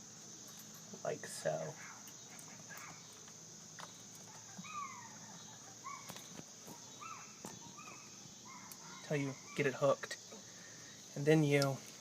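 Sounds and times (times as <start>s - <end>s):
insect chirring: 0.0s - 12.0s
bird down-slurred calls: 4.3s - 9.8s.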